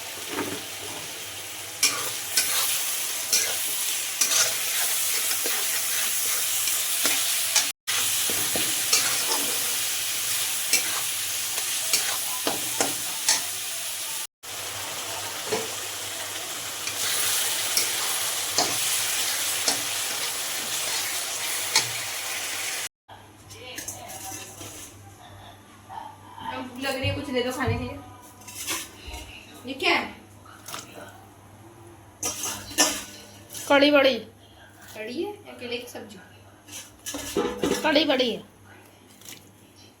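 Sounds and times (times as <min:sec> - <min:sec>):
curry sizzling in a pan: 0:00.0 - 0:22.9
metal spoon scraping a pan: 0:01.8 - 0:13.6, 0:16.8 - 0:22.0, 0:23.8 - 0:25.0, 0:28.3 - 0:29.2, 0:32.2 - 0:33.8, 0:36.7 - 0:37.9.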